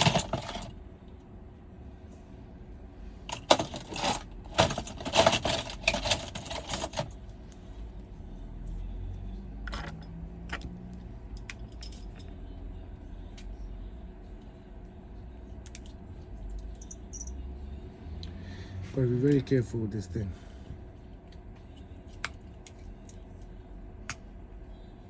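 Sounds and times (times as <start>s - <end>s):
small tools rattling and clinking: 0.0s - 0.7s, 3.3s - 7.2s, 9.6s - 12.4s, 16.6s - 17.4s.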